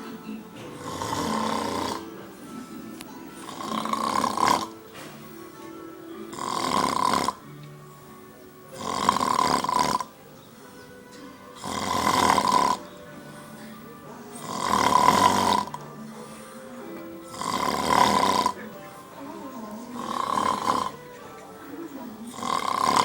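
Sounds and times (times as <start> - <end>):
man snoring loudly: 0.7 - 2.4, 3.3 - 5.1, 6.2 - 7.5, 8.7 - 10.2, 11.5 - 13.6, 14.3 - 15.9, 17.1 - 19.2, 19.8 - 21.2, 22.2 - 23.0.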